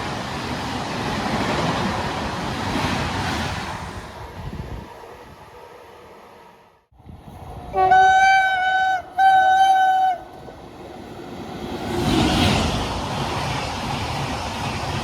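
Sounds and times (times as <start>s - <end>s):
train horn blasts: 7.7s - 10.3s.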